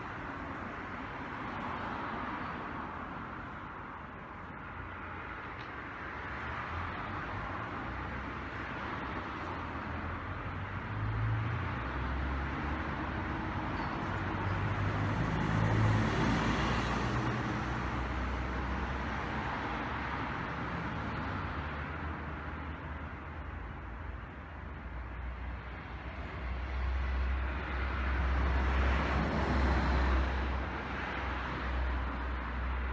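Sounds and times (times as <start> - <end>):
passing vehicle rumble: 0.0 - 23.1.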